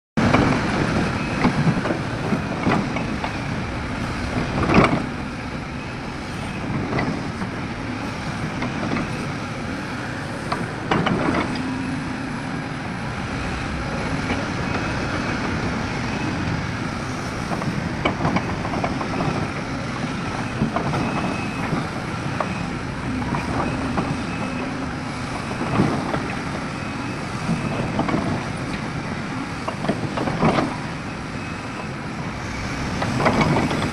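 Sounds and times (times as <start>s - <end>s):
excavator engine running under load: 0.2s - 33.9s
metallic clanks and knocks: 1.4s - 5.6s, 10.5s - 11.8s.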